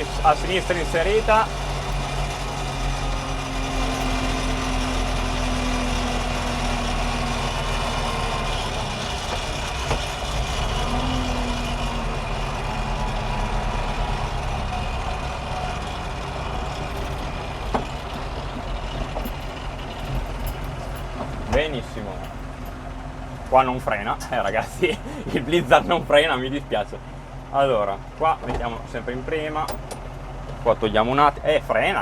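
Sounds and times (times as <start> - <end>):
tractor diesel engine running: 0.0 - 32.0.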